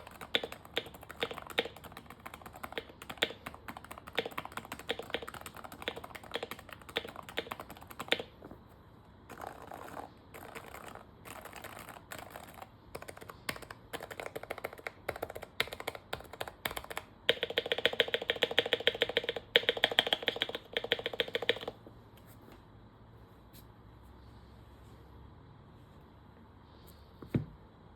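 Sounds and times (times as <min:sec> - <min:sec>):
keyboard keystrokes: 0:00.0 - 0:08.3, 0:09.3 - 0:21.8.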